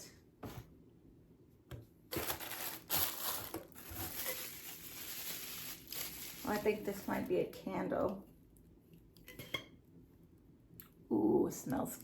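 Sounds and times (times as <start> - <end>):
packaging crinkling: 2.1 - 7.3.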